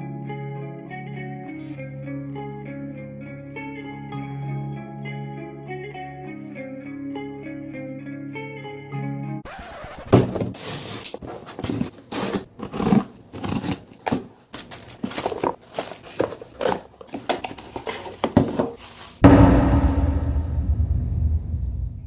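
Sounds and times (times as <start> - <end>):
guitar music: 0.1 - 9.4.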